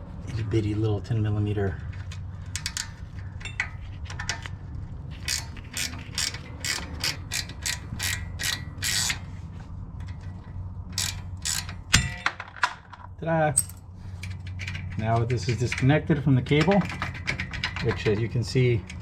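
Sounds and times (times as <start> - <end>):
ratchet wrench clicking: 2.6 - 4.5, 5.2 - 9.3, 11.0 - 12.2.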